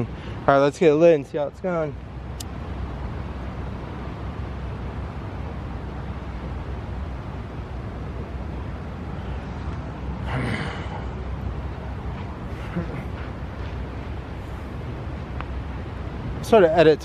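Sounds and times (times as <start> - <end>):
low outdoor rumble: 0.0 - 17.0.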